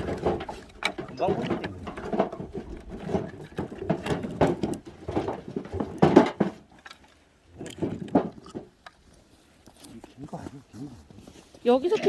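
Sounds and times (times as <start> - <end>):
objects knocking and clattering: 0.0 - 9.0.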